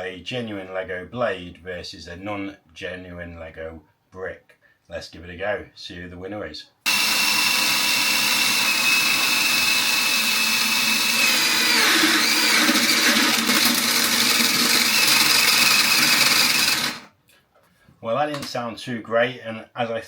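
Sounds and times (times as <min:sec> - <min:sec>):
toy table saw whining: 0:06.9 - 0:17.1.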